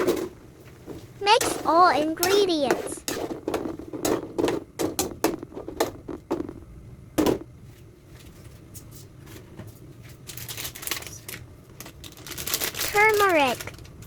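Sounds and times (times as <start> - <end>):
utensil knocking and scraping in pot: 0.9 - 6.6.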